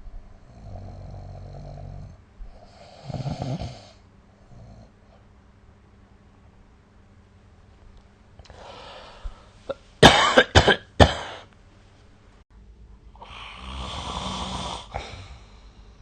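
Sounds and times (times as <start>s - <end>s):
person snoring: 0.4s - 5.0s, 13.2s - 15.7s
person breathing noisily: 8.4s - 9.6s, 13.2s - 16.0s
person coughing: 9.7s - 11.5s.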